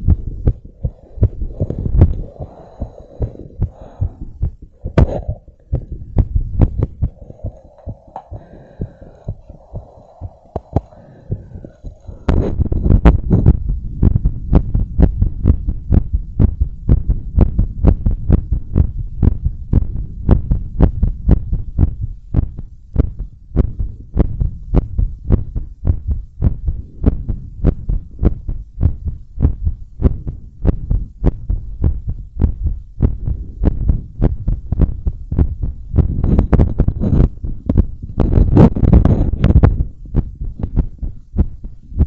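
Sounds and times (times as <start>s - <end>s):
fast heartbeat thumps: 0.0s - 42.0s.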